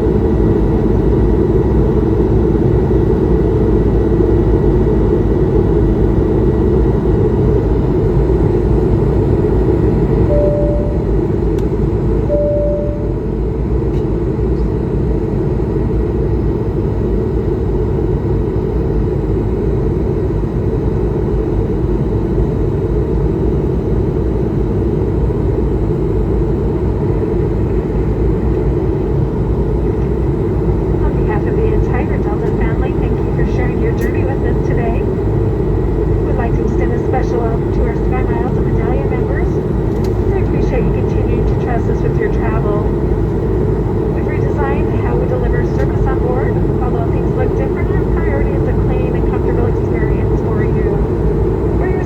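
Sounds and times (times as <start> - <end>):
airliner cabin engine rush: 0.0 - 52.0
brief beeps: 10.3 - 11.2, 12.3 - 13.3.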